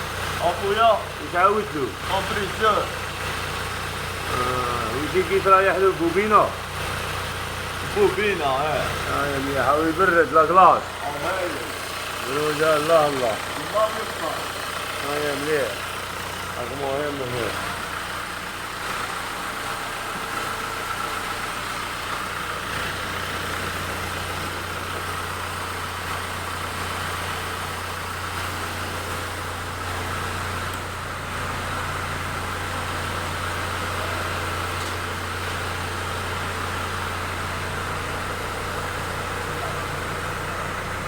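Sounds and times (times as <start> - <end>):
air conditioning compressor running: 0.0 - 41.0
car engine idling: 0.0 - 41.0.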